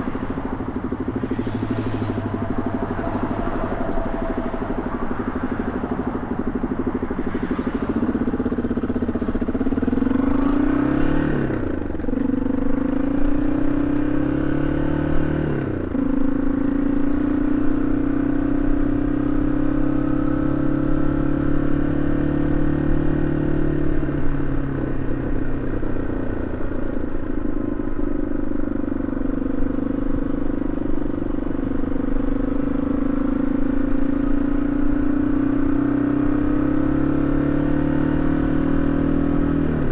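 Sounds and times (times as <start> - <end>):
motorcycle engine pulling away: 7.4 - 39.9.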